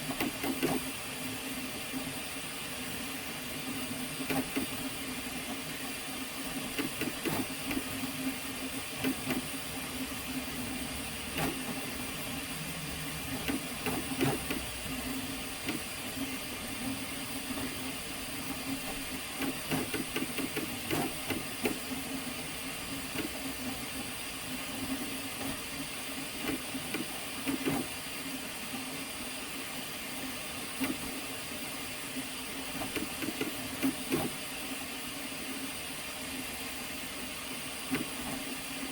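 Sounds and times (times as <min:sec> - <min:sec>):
printer fan hum with hiss: 0:00.0 - 0:38.9
printer clicks and knocks: 0:13.4 - 0:14.7, 0:19.4 - 0:21.9, 0:32.8 - 0:34.4.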